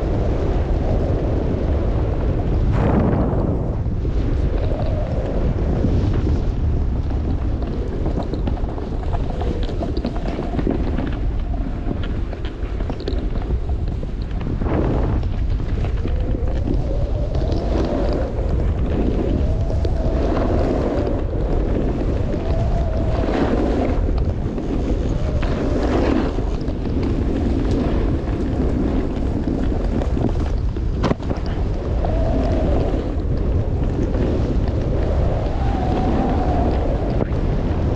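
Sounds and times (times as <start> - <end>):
skis sliding on snow: 0.0 - 37.9
wind buffeting microphone: 0.0 - 37.9
ticks and scrapes: 6.0 - 35.6.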